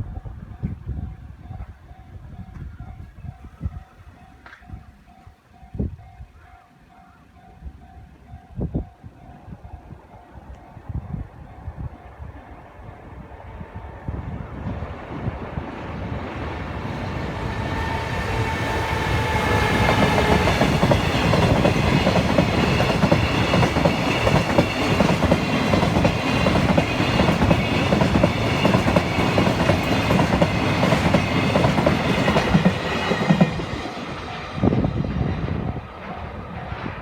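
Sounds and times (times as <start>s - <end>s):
freight train rumble: 9.2s - 37.0s.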